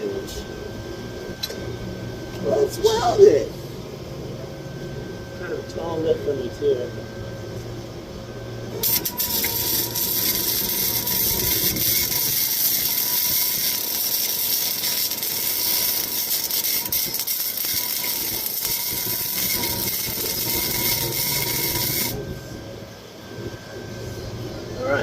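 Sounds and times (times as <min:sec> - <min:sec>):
welding arc crackling: 0:08.8 - 0:22.2.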